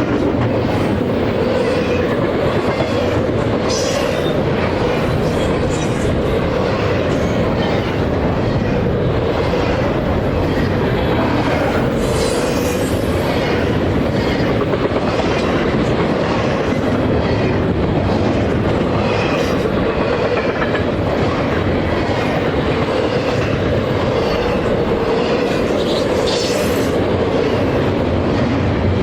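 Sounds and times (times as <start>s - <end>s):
train wheels rumbling on rails: 0.0s - 29.0s.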